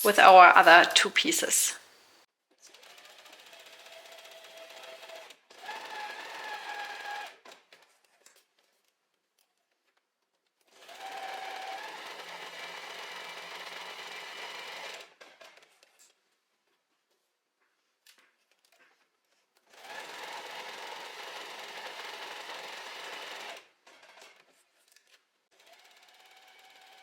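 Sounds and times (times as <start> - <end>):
sewing machine stitching: 2.6 - 8.1, 10.6 - 16.1, 19.7 - 24.6, 25.5 - 27.0.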